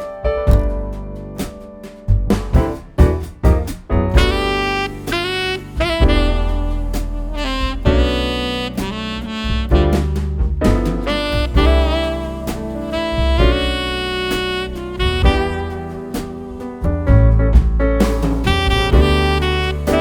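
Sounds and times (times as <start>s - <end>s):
drums: 0.0s - 20.0s
saxophone melody: 4.2s - 17.6s, 18.4s - 20.0s.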